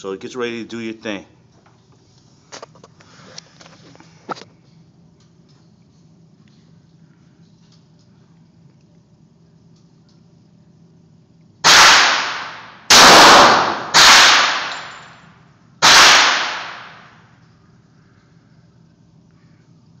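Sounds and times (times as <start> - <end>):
pistol shots echoing: 11.6 - 15.0, 15.8 - 17.2.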